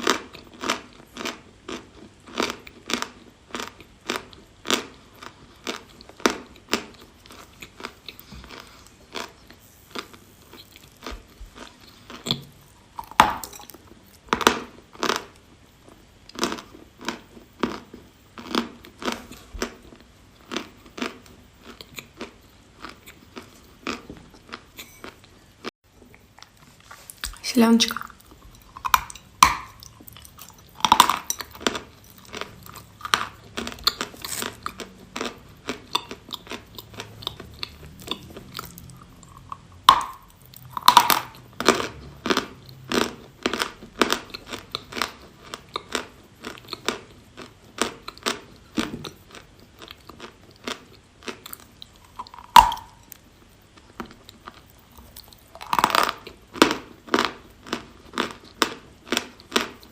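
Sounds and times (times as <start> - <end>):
chalk being chewed: 26.1 - 27.4, 28.0 - 53.2.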